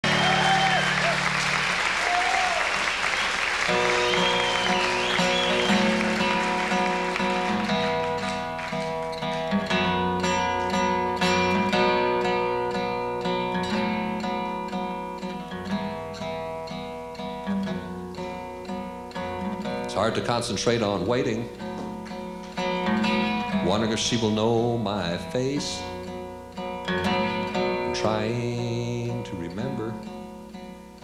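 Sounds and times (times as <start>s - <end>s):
whistle from audience: 0.0s - 6.9s
audience applause: 0.0s - 9.8s
plucked string instrument: 5.0s - 20.4s.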